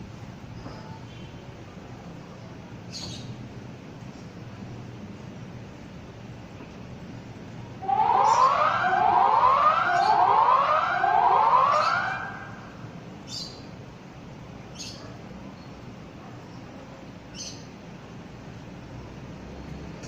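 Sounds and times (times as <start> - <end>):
electronic siren whooping: 7.8 - 12.6.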